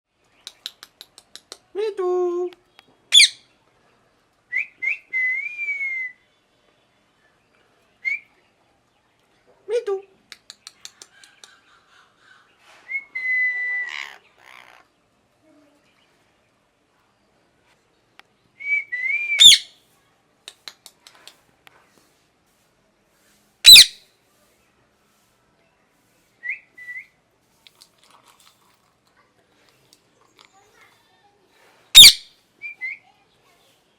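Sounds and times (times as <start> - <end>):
parrot screech: 19.4 - 19.7, 23.7 - 24.0, 32.0 - 32.2
parrot whistling notes: 19.4 - 19.7, 23.7 - 23.9, 32.0 - 32.8.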